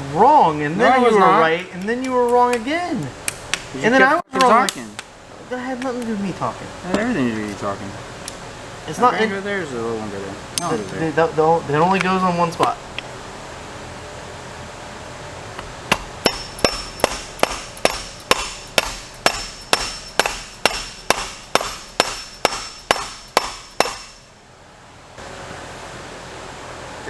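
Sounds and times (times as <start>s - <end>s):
hammer tapping on metal: 1.8s - 3.8s, 15.9s - 24.3s.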